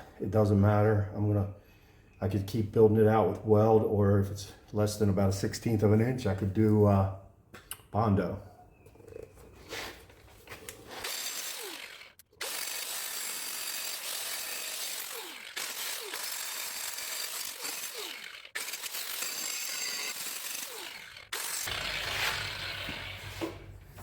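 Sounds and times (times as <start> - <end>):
angle grinder grinding steel: 10.6 - 24.0.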